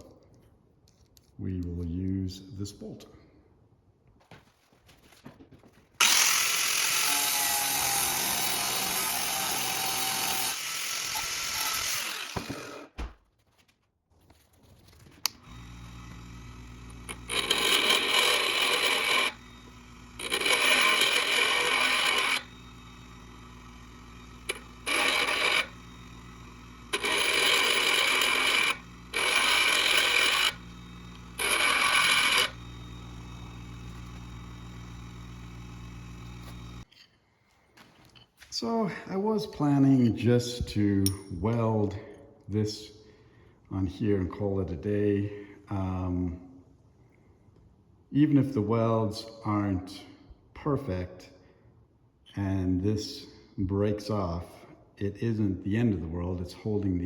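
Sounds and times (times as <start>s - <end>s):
welder humming: 6.0s - 12.9s, 15.2s - 36.9s
power tool grinding metal: 6.0s - 13.0s, 15.3s - 36.9s.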